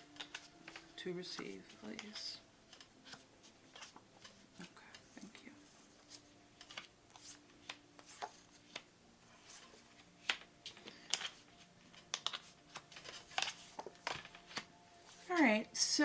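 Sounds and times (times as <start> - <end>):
cards flicking and sliding: 0.1 - 0.8, 6.1 - 14.7.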